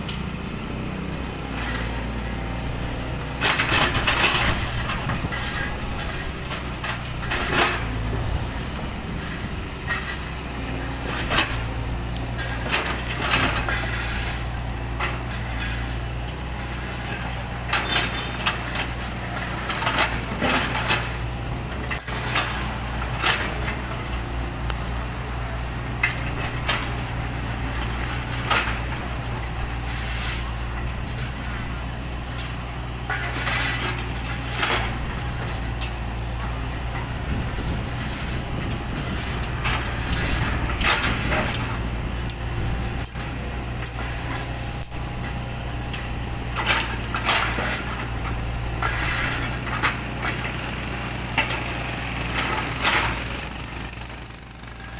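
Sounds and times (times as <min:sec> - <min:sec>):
heavy engine idling: 0:00.0 - 0:54.9.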